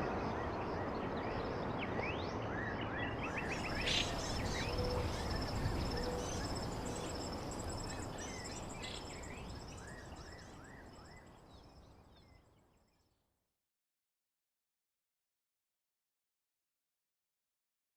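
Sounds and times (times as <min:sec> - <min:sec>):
insects trilling: 0:03.5 - 0:10.5.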